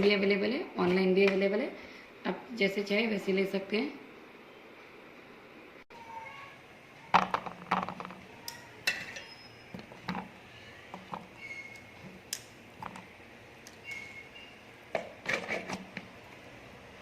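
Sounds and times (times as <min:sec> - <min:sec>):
utensils and dishes clinking: 0:07.8 - 0:10.4.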